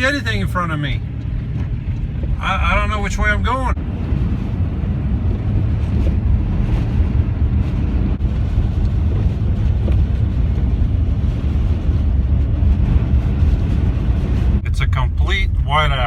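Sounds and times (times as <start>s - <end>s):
van engine and road rumble: 0.0s - 16.0s
wind: 0.0s - 16.0s.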